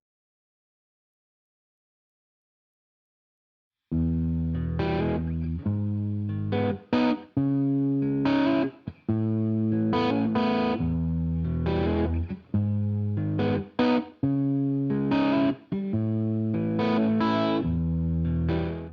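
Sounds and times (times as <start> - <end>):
distorted electric guitar chords: 4.0 - 18.9.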